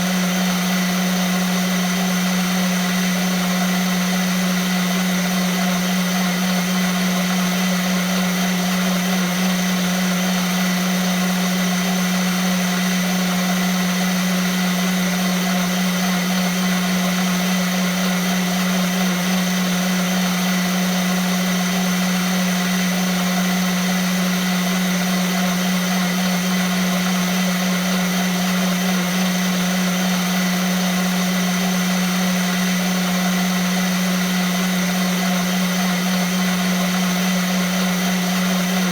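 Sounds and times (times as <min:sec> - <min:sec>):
blender running: 0:00.0 - 0:38.9.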